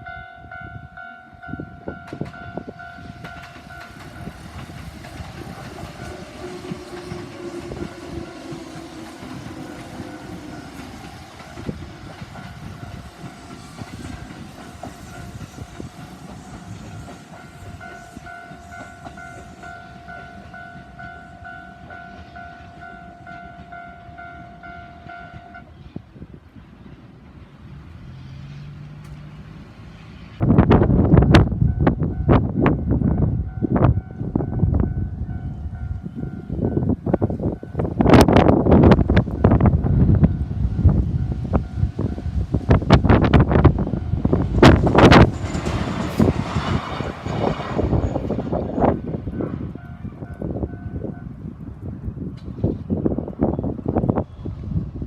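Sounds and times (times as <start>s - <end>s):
train wheels clattering: 2.0s - 25.7s, 36.5s - 50.1s.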